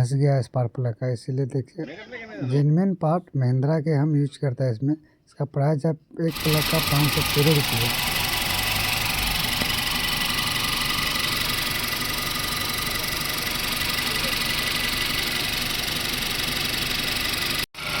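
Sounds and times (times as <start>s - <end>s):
car engine idling: 6.3s - 17.6s.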